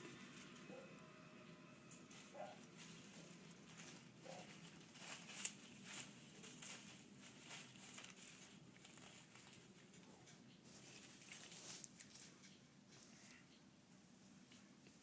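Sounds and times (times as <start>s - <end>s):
faint rustling: 2.0s - 13.6s.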